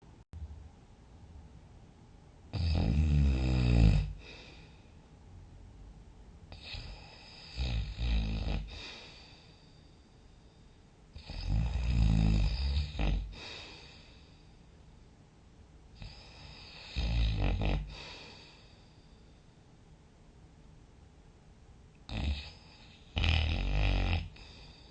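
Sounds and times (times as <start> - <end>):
person snoring loudly: 2.5 - 4.6, 6.5 - 9.2, 11.2 - 13.9, 16.0 - 18.5, 22.1 - 24.6
quiet breathing: 3.4 - 5.5, 6.4 - 20.0, 21.9 - 23.5, 24.1 - 24.9.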